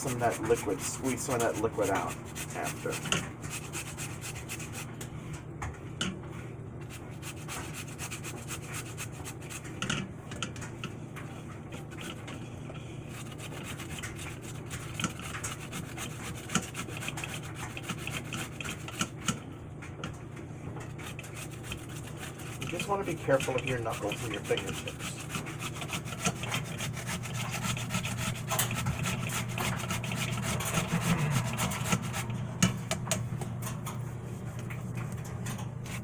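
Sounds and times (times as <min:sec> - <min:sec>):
potatoes grated on metal grater: 0:00.0 - 0:04.9, 0:06.8 - 0:10.0, 0:11.8 - 0:19.4, 0:20.9 - 0:32.8.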